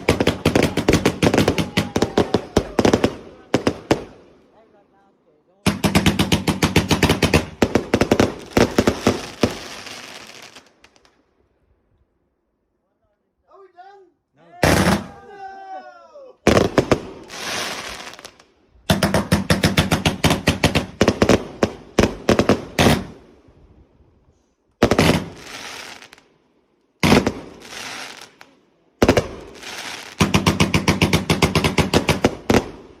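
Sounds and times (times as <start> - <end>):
fireworks banging: 0.0 - 4.2, 5.6 - 11.2, 16.5 - 23.2, 24.8 - 26.2, 27.0 - 33.0
fireworks crackling hiss: 5.7 - 11.2, 16.5 - 23.5, 24.5 - 26.4, 27.0 - 33.0.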